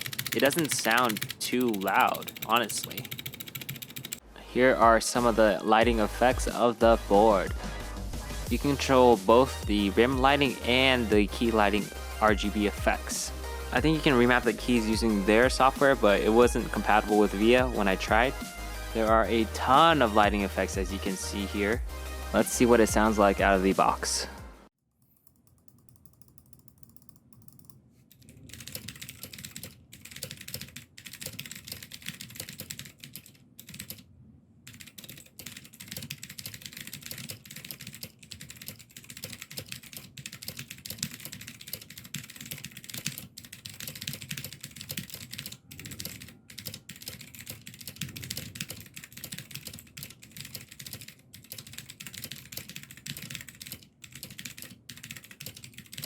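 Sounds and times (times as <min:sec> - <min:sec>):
fast typing on mechanical keyboard: 0:00.0 - 0:04.2, 0:25.7 - 0:34.0, 0:34.7 - 0:56.0.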